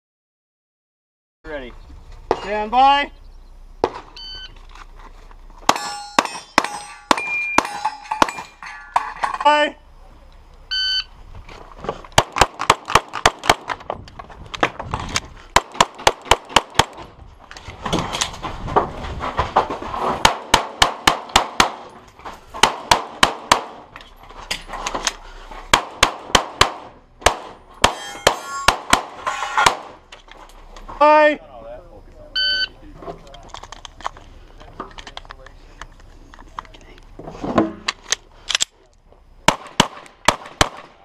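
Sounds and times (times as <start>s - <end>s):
shot timer beep: 4.2s - 4.6s, 10.7s - 11.1s.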